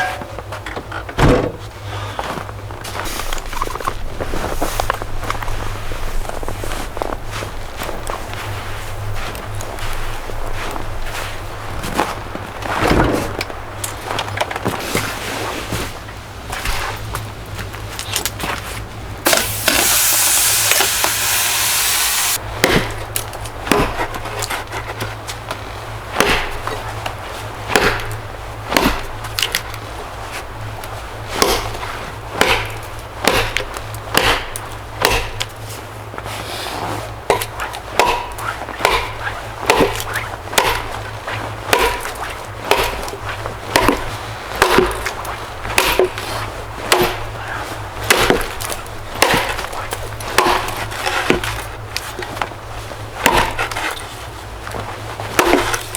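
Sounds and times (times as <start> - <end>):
loud hissing rush: 19.3 - 22.4
wood chopping strikes: 19.3 - 24.1, 26.2 - 26.7, 27.7 - 29.6, 31.4 - 31.8, 32.4 - 35.5, 37.3 - 52.1, 53.2 - 54.0, 55.3 - 55.9.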